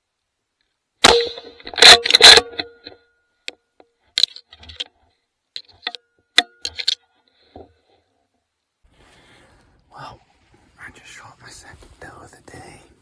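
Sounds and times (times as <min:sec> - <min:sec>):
rifle action clacking: 0:01.0 - 0:02.9, 0:05.6 - 0:07.0
light metal clicks and rattles: 0:05.6 - 0:07.7.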